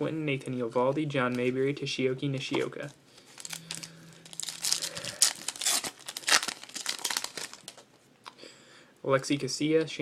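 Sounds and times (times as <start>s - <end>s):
foil wrapper tearing and crinkling: 3.4s - 7.8s.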